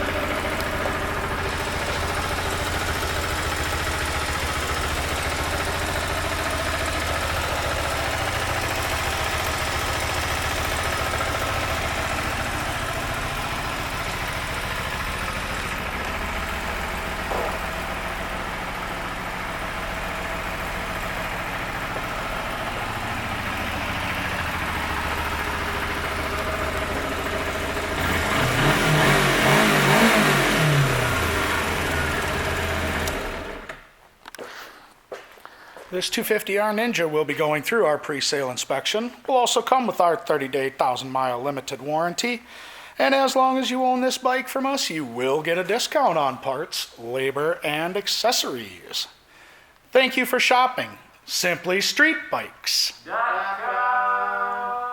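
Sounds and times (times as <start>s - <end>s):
motorcycle engine idling and revving: 0.0s - 33.8s.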